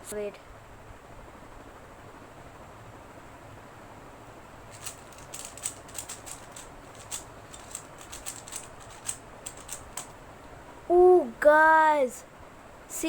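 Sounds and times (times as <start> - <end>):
faint room hiss: 0.0 - 13.0
puzzle cube clicking: 4.8 - 10.1.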